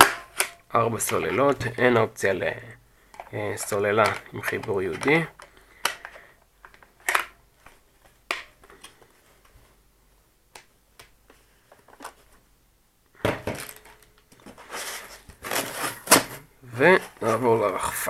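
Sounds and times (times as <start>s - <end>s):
hard items clicking and knocking: 13.2s - 17.2s
clattering and rustling: 13.3s - 17.4s.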